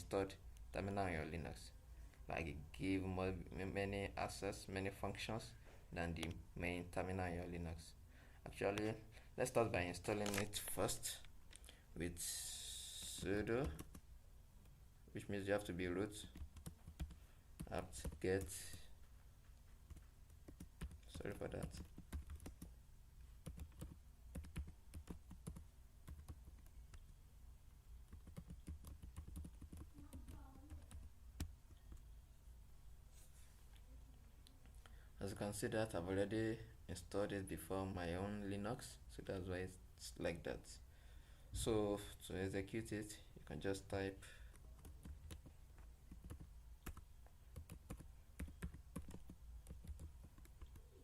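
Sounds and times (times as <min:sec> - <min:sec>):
keyboard typing: 0:13.0 - 0:14.1, 0:16.2 - 0:18.9, 0:19.8 - 0:22.7, 0:23.4 - 0:27.2, 0:28.1 - 0:32.1, 0:44.5 - 0:51.0.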